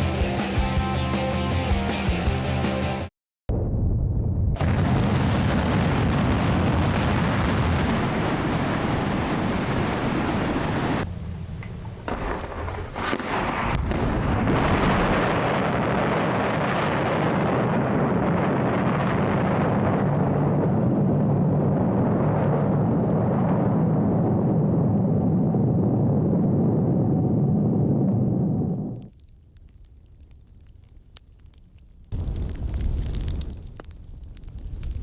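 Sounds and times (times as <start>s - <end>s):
firework rockets hissing crackle: 32.1s - 35.0s.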